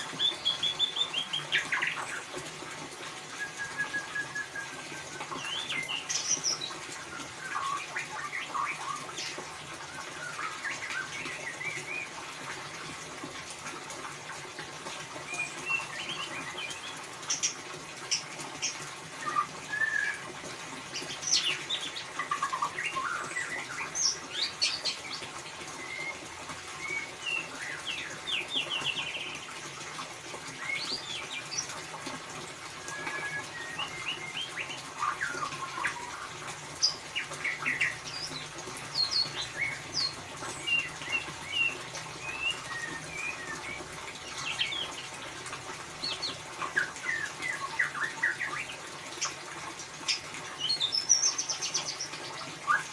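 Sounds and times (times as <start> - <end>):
bird singing chirps and trills: 0.0 - 2.3, 3.4 - 12.2, 15.2 - 20.2, 20.9 - 25.2, 26.8 - 29.5, 32.8 - 45.2, 46.0 - 49.4, 50.0 - 52.9.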